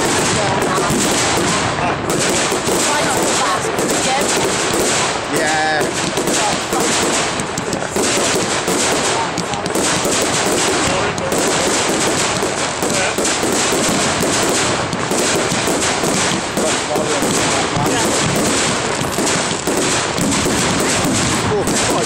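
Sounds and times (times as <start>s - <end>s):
crowd voices: 0.0s - 22.0s
fireworks crackling and banging: 0.0s - 22.0s.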